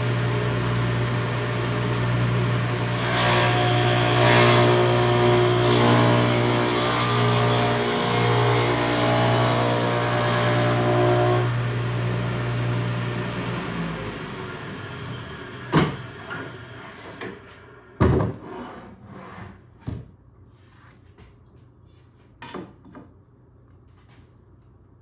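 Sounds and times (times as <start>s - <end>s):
table saw winding down: 0.0s - 16.6s.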